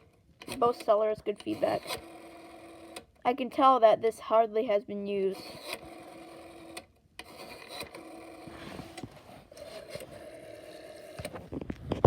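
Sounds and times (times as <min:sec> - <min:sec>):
rotary phone dial whirring: 0:00.0 - 0:03.1, 0:05.3 - 0:11.6.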